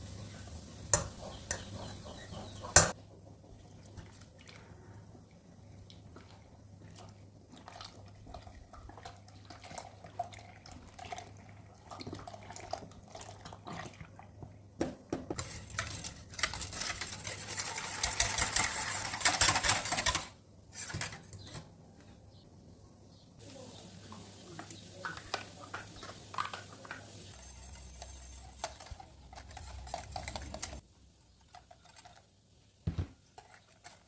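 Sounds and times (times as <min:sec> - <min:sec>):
fast mixing in a bowl: 0:06.1 - 0:14.3, 0:15.4 - 0:20.2, 0:27.3 - 0:30.8
utensils clinking against bowl: 0:15.4 - 0:21.6, 0:25.1 - 0:30.8.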